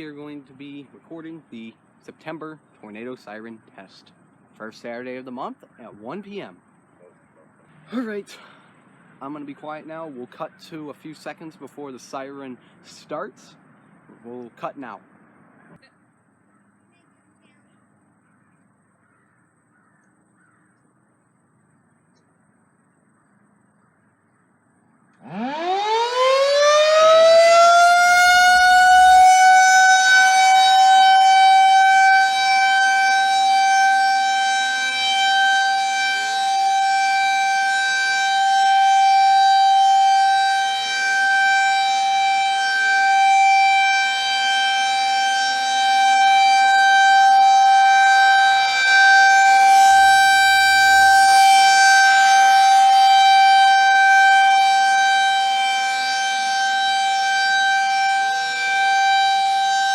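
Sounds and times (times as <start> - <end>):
tornado siren winding up: 25.2 - 59.9.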